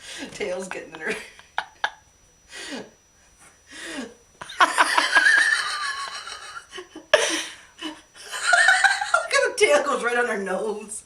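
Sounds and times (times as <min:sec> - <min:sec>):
person laughing: 0:00.1 - 0:02.0, 0:03.8 - 0:09.3.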